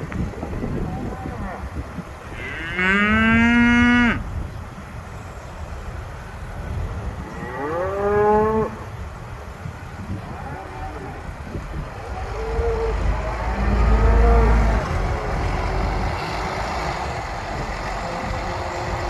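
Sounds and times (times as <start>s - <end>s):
cow mooing: 2.3s - 4.2s, 11.9s - 19.0s.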